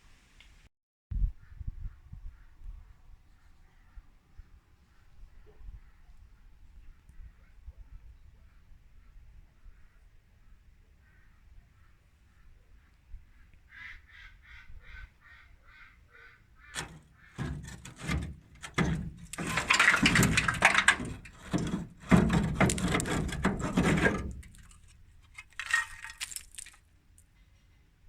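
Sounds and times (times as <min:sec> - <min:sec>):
sheet metal clattering and rasping: 0:16.8 - 0:26.7.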